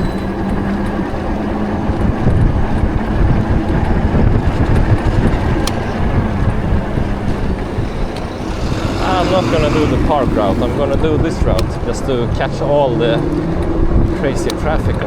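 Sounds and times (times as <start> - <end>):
nearby car traffic: 8.1 - 11.3
road noise rushing over microphone: 8.1 - 14.0.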